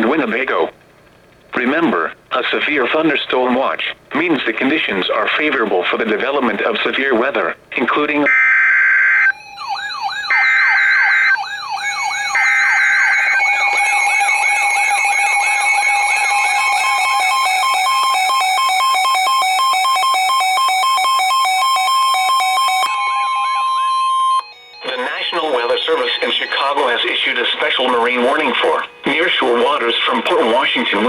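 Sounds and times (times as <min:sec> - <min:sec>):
wailing siren: 0:08.2 - 0:27.4
beeping tone: 0:08.2 - 0:28.4
screeching alert data bursts: 0:08.2 - 0:28.8.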